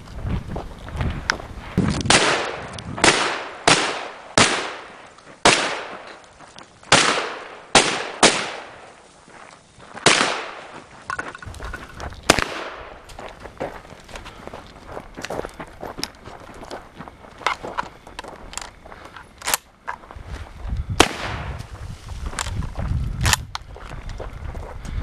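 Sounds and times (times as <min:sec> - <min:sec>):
shotgun shots echoing: 0:02.1 - 0:06.2, 0:06.9 - 0:08.9, 0:10.0 - 0:10.7, 0:12.3 - 0:13.0, 0:21.0 - 0:21.6.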